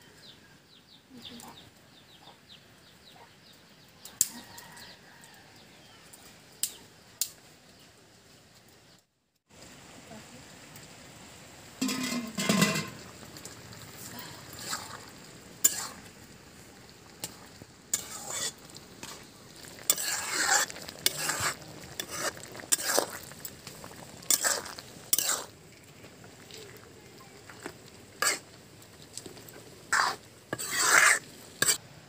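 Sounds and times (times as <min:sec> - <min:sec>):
food sizzling in a pan: 0:08.8 - 0:32.0
spoon stirring and scraping pan: 0:11.8 - 0:16.3, 0:16.9 - 0:31.8.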